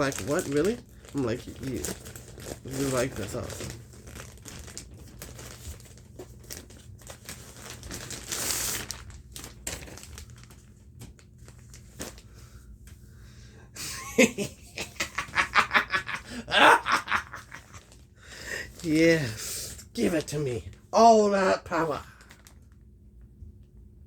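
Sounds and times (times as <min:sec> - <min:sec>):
plastic packaging crinkling and tearing: 0:00.0 - 0:12.3, 0:16.8 - 0:20.8, 0:21.7 - 0:22.8.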